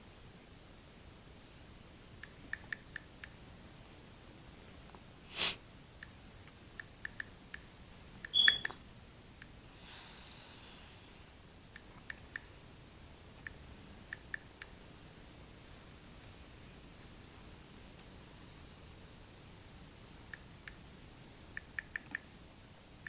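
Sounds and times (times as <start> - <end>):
breathy sniff: 5.3 - 5.6
short high beep: 8.3 - 8.8.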